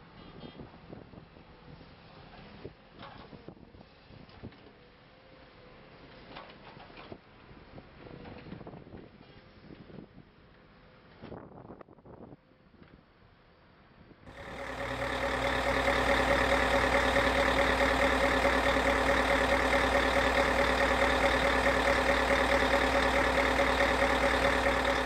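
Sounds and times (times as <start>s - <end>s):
diesel machinery engine running: 14.3s - 25.0s.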